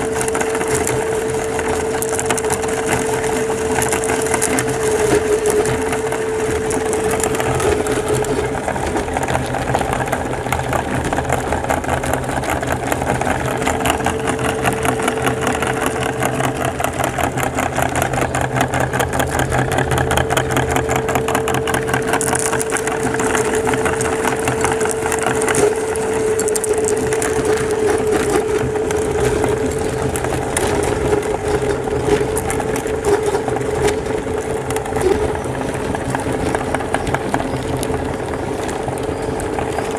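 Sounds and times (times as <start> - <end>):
hard candies crunching: 0.0 - 39.9
meat grinder motor hum: 0.0 - 39.9.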